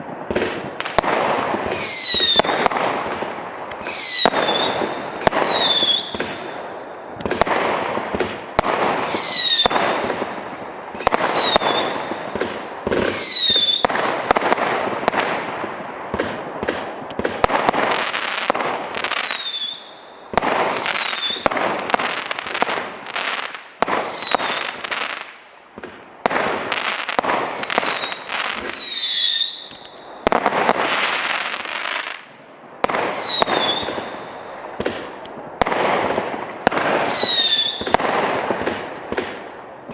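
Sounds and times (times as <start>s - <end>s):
firework cake firing: 0.0s - 39.9s
firework whistles falling in pitch: 1.6s - 2.7s, 3.8s - 6.4s, 8.9s - 9.8s, 13.0s - 13.9s, 18.9s - 21.5s, 27.4s - 30.4s, 33.0s - 34.5s, 36.9s - 38.0s.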